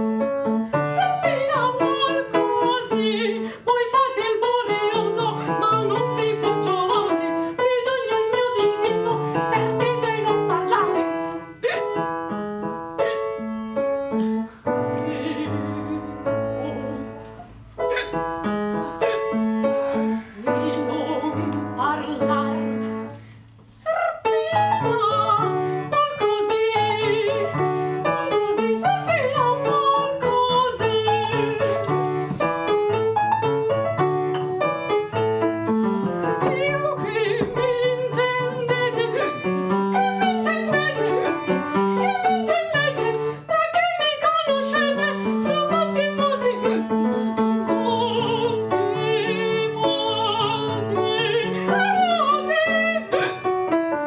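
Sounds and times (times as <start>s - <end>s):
piano accompaniment: 0.0s - 54.0s.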